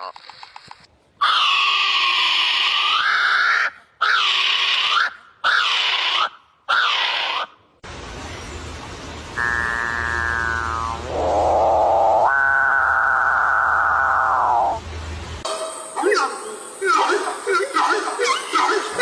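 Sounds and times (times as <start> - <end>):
bird screaming calls: 1.2 - 7.5.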